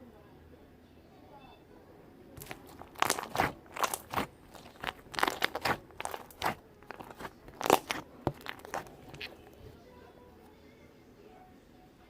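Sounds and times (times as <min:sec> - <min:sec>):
slime squeezed popping: 0:02.4 - 0:09.6.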